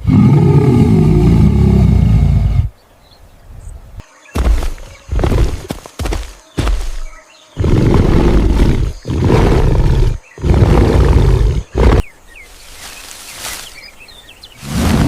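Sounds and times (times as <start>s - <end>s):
big cat roaring: 0.0s - 2.7s, 7.6s - 12.1s.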